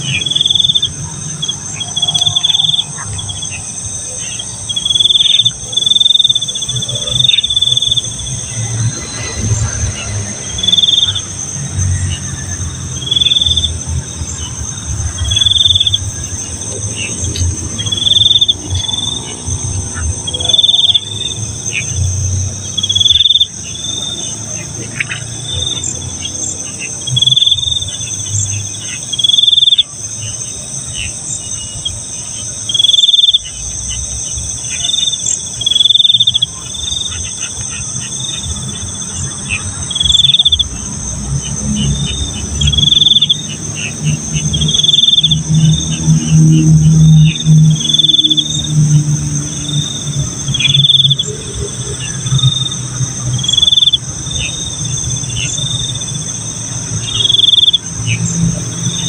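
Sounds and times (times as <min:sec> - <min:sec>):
cricket chirping: 0:00.0 - 0:59.0
insects droning: 0:00.0 - 0:59.0.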